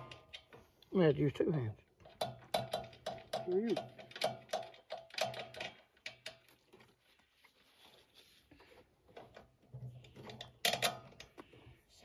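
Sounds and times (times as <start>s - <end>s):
hand tools clicking on bolts: 2.0s - 6.7s, 10.2s - 11.4s
faint handling noise: 5.5s - 12.0s.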